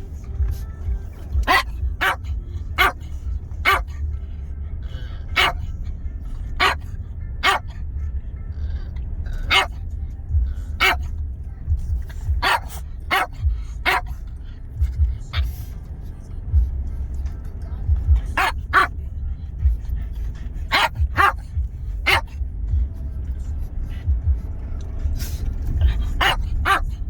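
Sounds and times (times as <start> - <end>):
steady low rumble: 0.0 - 27.0
dog barking: 1.3 - 4.2, 4.8 - 8.0, 8.6 - 11.2, 11.8 - 15.8, 17.9 - 22.4, 25.2 - 27.0.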